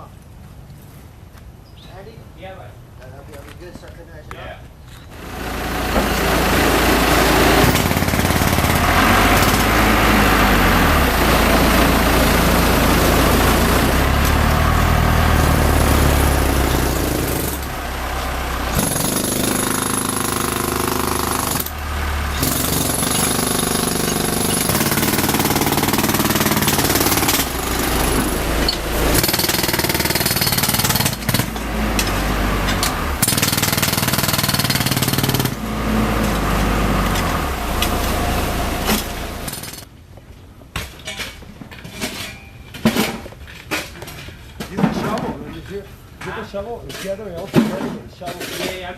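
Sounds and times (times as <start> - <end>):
jackhammer hammering: 5.2 - 39.9.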